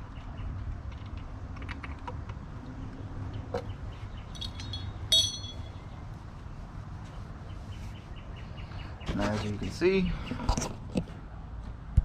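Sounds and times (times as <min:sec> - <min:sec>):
low background hum: 0:00.0 - 0:11.3
small metal parts clinking: 0:04.3 - 0:05.8.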